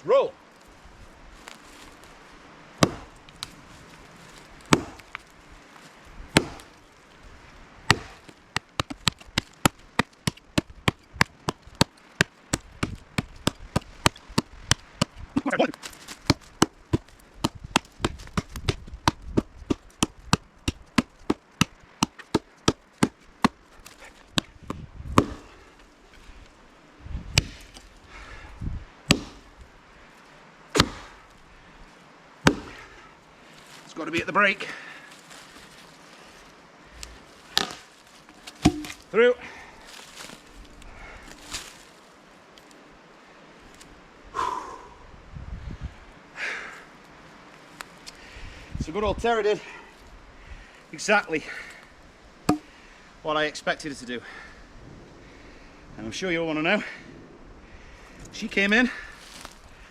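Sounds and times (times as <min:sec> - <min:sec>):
axe chopping log: 0:02.8 - 0:03.2, 0:04.6 - 0:05.2, 0:06.3 - 0:06.7, 0:07.9 - 0:25.6, 0:27.3 - 0:27.9, 0:29.1 - 0:29.5, 0:30.7 - 0:31.2, 0:32.4 - 0:32.9, 0:37.5 - 0:39.1.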